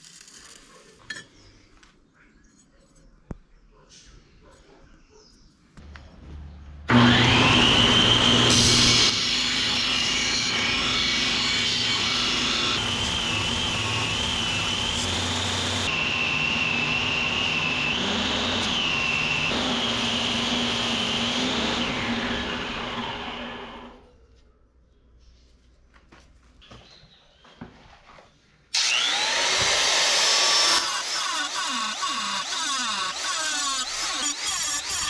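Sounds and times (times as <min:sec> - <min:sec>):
power tool motor whining: 0:06.9 - 0:24.0, 0:28.8 - 0:35.0.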